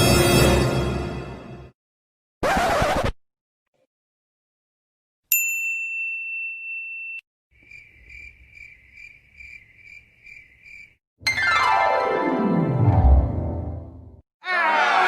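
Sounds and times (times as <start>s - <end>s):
cricket chirping: 7.6s - 11.0s.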